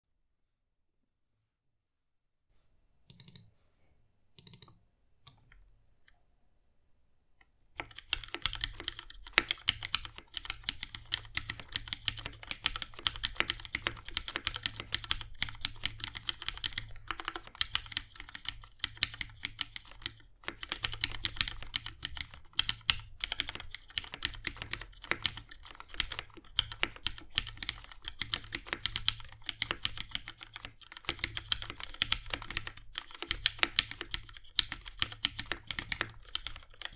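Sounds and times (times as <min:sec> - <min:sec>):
typing on mechanical keyboard: 0:03.1 - 0:03.5, 0:04.4 - 0:04.8, 0:07.8 - 0:36.9.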